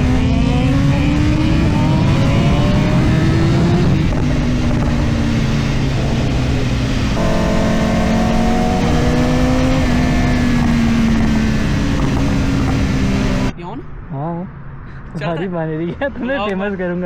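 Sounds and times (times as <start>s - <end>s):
motorcycle engine running: 0.0s - 13.5s.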